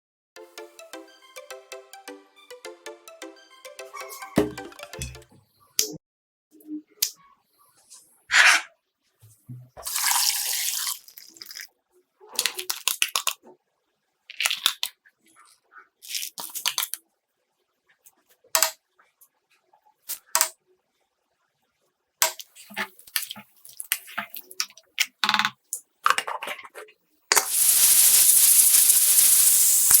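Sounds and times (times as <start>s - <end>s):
pouring: 9.8s - 11.6s, 27.4s - 30.0s
loud steady hissing: 27.5s - 30.0s.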